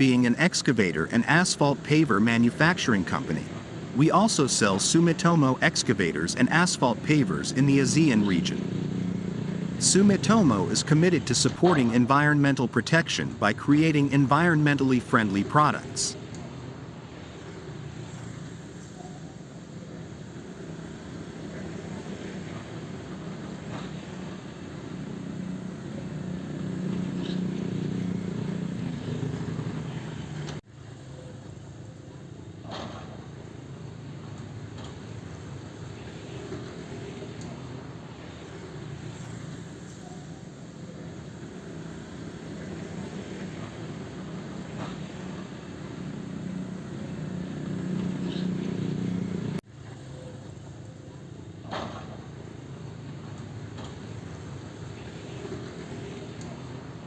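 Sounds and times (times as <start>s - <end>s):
excavator diesel engine running: 0.0s - 18.1s
excavator diesel engine: 0.0s - 57.0s.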